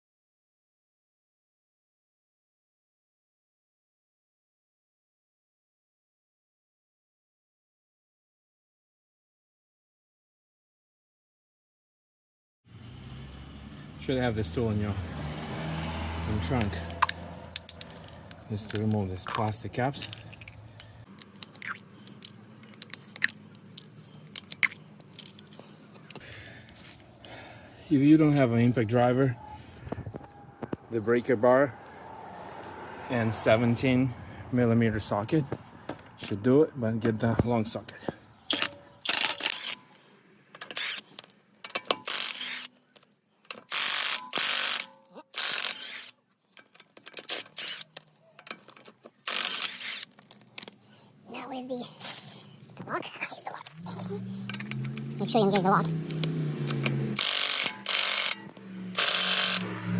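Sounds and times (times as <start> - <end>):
impact wrench rattling: 16.6 - 26.2, 38.5 - 39.8, 43.5 - 50.8, 56.1 - 59.7
plastic caps clicking and snapping: 16.6 - 26.2.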